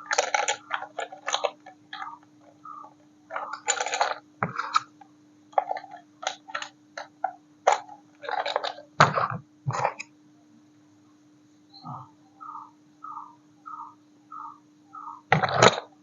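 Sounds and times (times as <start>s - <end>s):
plastic packaging rustling and clicking: 0.0s - 2.3s, 5.6s - 10.0s
faint steady hum: 0.0s - 16.0s.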